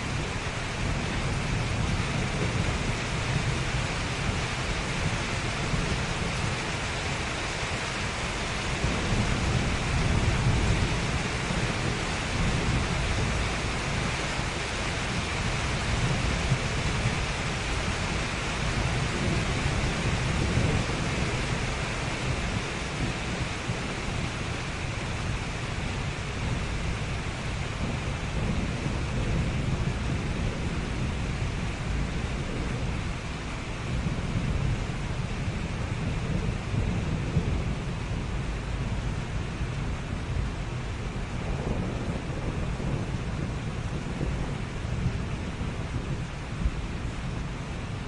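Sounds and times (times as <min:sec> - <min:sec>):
continuous street hiss: 0:00.0 - 0:48.0
heavy low rumble: 0:15.5 - 0:48.0.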